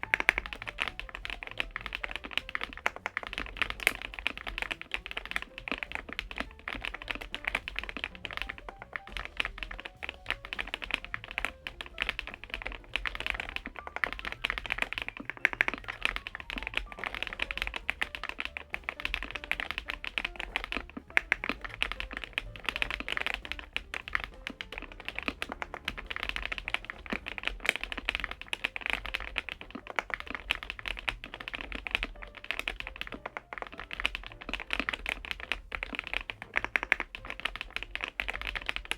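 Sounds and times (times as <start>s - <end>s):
mechanical keyboard typing: 0.0s - 38.9s.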